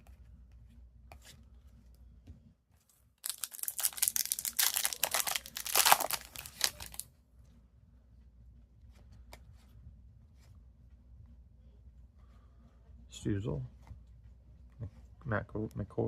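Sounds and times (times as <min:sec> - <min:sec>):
wrapper torn open and crinkled: 0:03.2 - 0:07.0.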